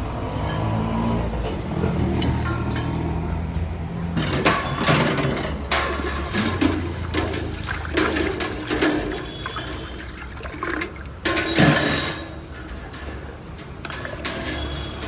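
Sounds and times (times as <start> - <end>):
liquid gushing and splashing: 5.6 - 13.2.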